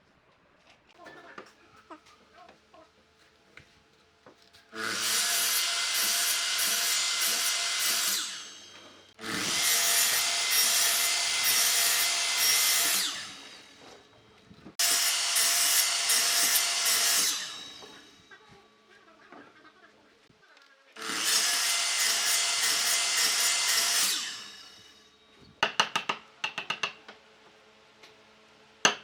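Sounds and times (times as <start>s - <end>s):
power tool working wood: 4.8s - 14.0s, 14.8s - 18.1s, 21.0s - 24.9s.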